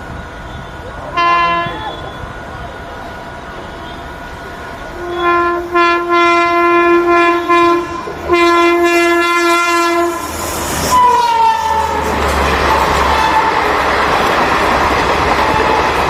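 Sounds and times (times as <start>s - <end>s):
rumble of passing train: 0.0s - 16.0s
train horn blasts: 0.6s - 2.2s, 4.9s - 13.6s.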